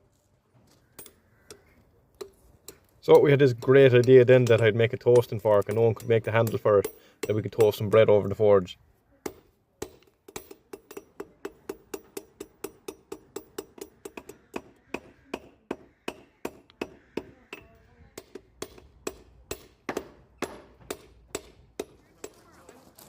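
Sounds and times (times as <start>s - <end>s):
hammer striking metal on anvil: 2.7s - 8.0s.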